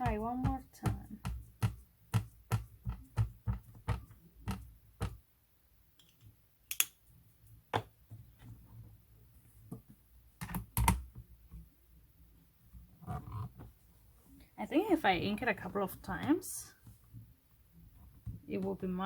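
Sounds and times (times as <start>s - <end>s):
ink pad tapping on stamp: 0.0s - 5.2s.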